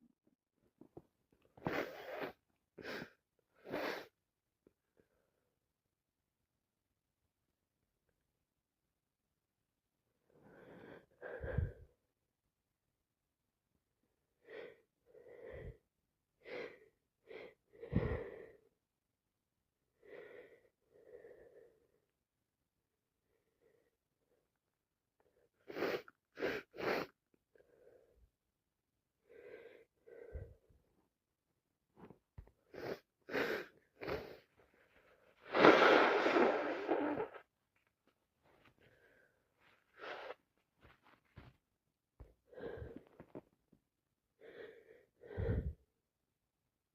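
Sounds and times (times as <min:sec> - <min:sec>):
woman wheezing breaths: 0:16.4 - 0:18.7, 0:44.4 - 0:45.9.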